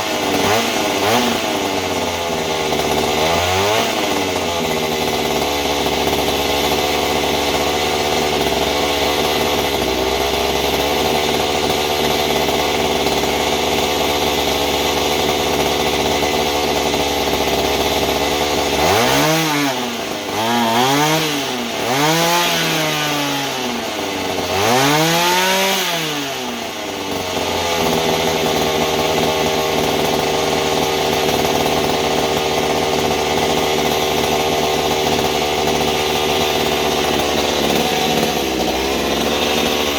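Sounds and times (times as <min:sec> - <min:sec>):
small engine running and revving: 0:00.0 - 0:39.9.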